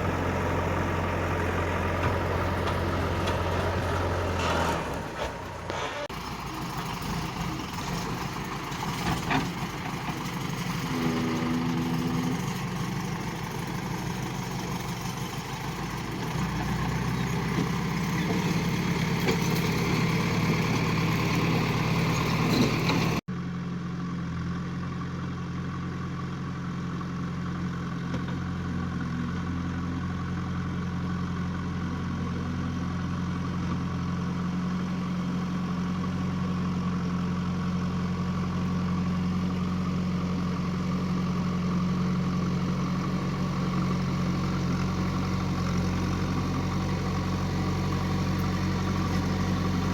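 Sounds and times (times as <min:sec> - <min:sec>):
backhoe diesel engine running: 0:00.0 - 0:49.9.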